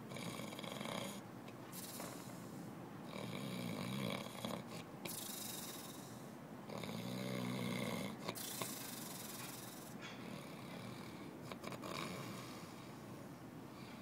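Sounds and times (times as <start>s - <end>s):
man snoring: 0.1s - 1.2s, 3.1s - 9.3s, 10.4s - 12.6s.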